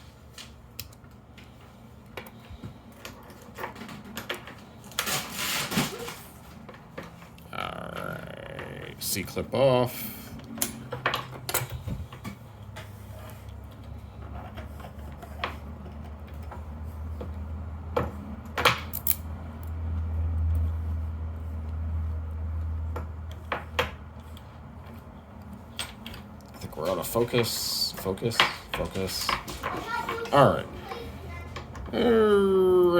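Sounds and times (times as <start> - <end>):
metallic clicks of padlock parts: 18.9 - 19.7.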